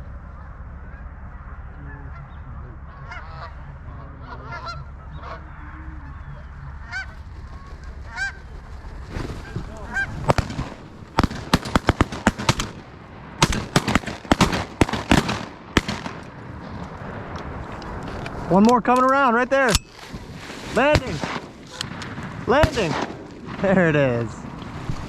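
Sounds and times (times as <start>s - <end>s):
geese honking: 0.2s - 12.7s
shotgun blasts: 10.2s - 16.8s, 20.8s - 24.0s.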